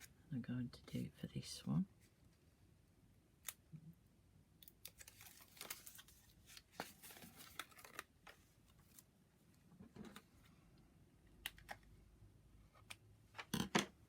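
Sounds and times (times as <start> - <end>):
cardstock and tape handling: 4.6 - 9.1.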